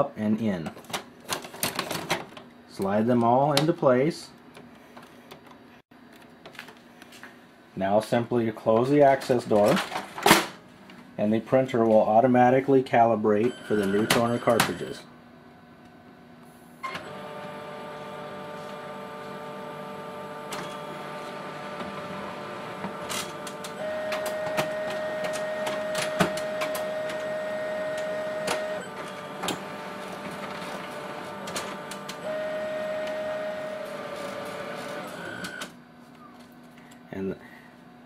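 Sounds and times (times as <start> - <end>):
printer motor whine: 16.8 - 35.8
printer motors whirring: 16.8 - 35.8
printer clicks: 22.8 - 27.2.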